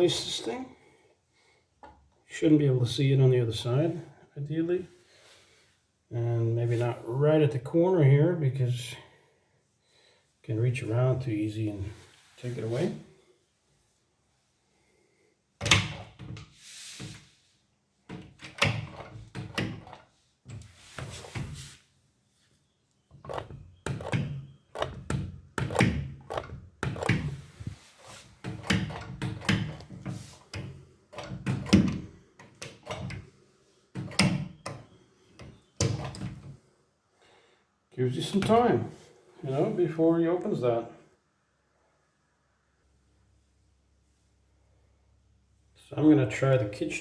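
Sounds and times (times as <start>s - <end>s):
scraping and handling noises: 19.8s - 21.9s.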